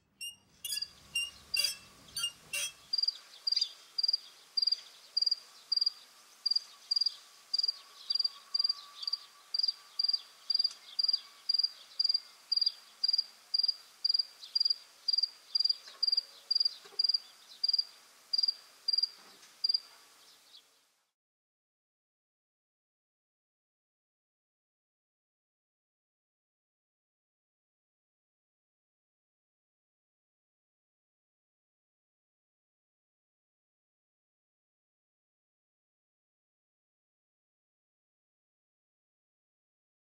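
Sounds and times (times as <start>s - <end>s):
cricket chirping: 0.7s - 19.9s.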